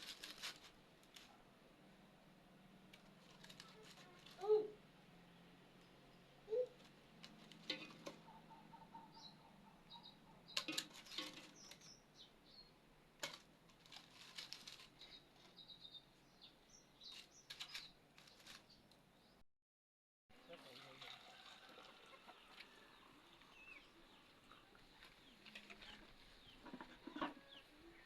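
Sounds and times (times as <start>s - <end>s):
faint bird chirps: 6.4s - 6.8s, 8.2s - 12.7s.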